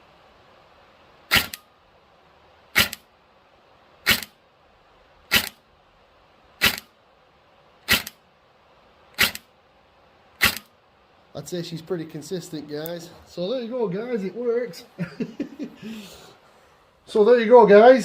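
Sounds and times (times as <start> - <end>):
airsoft gun single shots: 1.3 - 1.6.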